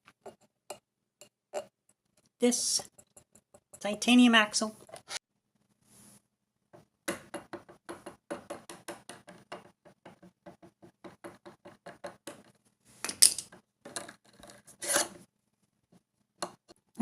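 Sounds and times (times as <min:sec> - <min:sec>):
metal scrape: 0:14.6 - 0:15.2.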